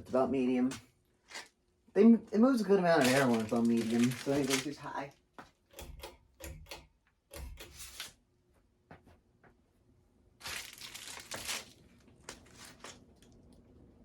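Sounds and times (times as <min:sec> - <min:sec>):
rustling crinkling: 0:02.6 - 0:05.0, 0:10.4 - 0:13.6.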